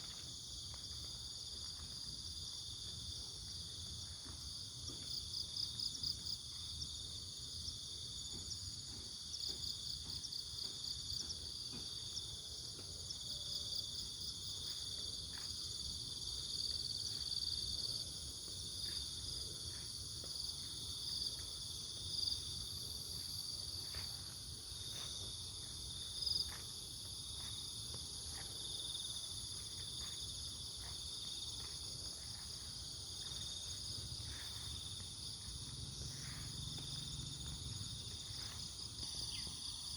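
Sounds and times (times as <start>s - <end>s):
crickets and insects trilling: 12.0s - 39.9s.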